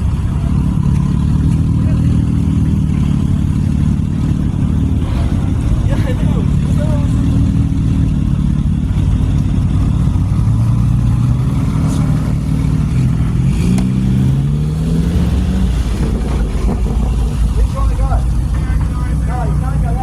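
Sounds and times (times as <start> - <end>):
car engine rumbling: 0.0 - 20.0.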